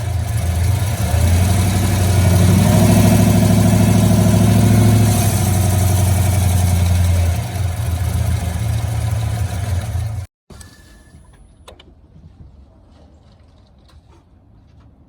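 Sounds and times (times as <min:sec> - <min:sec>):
truck engine choppy idle: 0:00.0 - 0:10.3.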